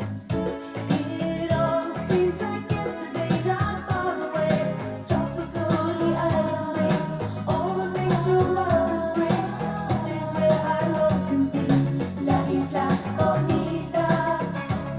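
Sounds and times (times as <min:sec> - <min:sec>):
pop song over speakers: 0:00.0 - 0:14.9.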